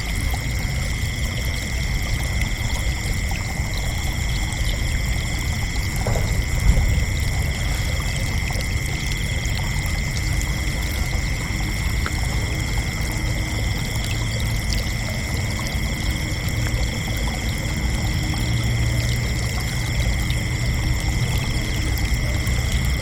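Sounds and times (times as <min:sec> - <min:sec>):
crickets chirping: 0:00.0 - 0:23.0
low rushing rumble: 0:02.9 - 0:13.4.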